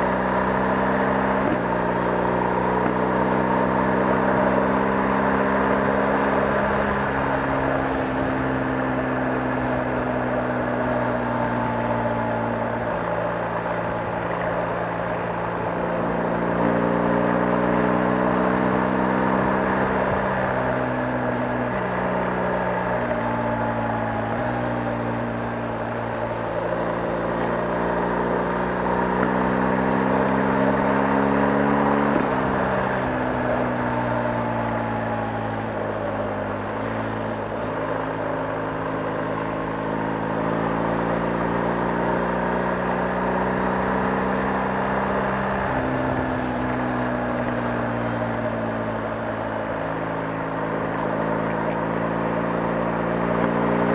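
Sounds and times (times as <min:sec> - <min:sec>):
motorcycle engine running: 0:00.0 - 0:53.9.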